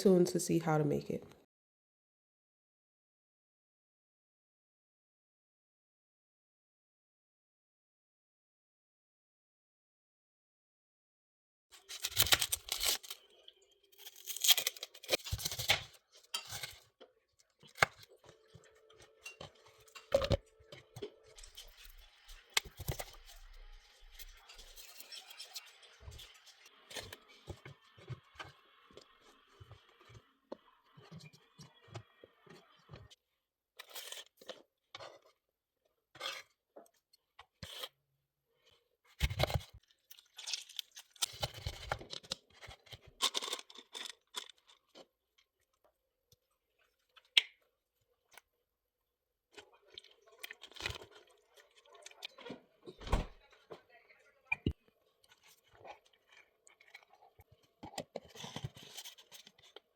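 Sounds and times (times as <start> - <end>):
tearing and crunching: 11.8 - 16.8.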